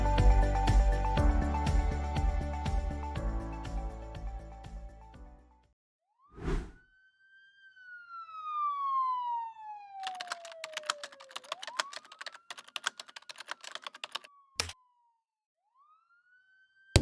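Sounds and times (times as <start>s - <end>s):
siren wailing: 6.7s - 12.6s, 14.2s - 17.0s
fast sharp clicks: 10.0s - 14.8s.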